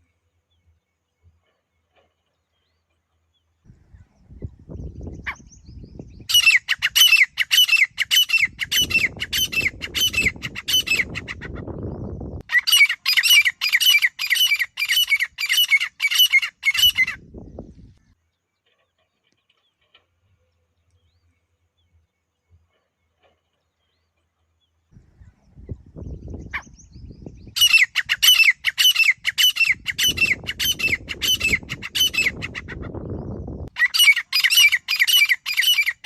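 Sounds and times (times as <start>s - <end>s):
francolin calling shrilly: 6.2s - 11.6s, 12.4s - 17.2s, 27.4s - 33.0s, 33.7s - 36.0s.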